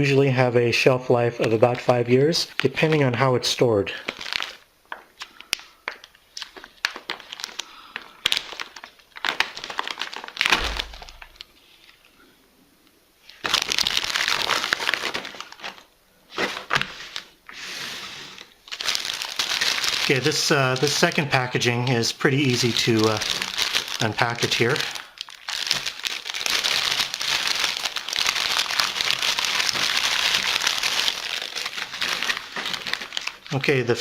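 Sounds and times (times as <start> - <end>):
plastic bag crinkling: 3.9 - 12.0, 13.3 - 17.4, 18.4 - 33.9
low thump: 10.5 - 11.4.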